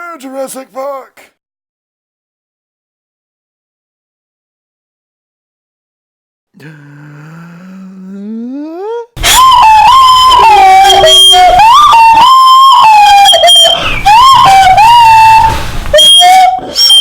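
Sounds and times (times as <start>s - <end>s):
high voice screeching a tune: 8.8s - 17.0s.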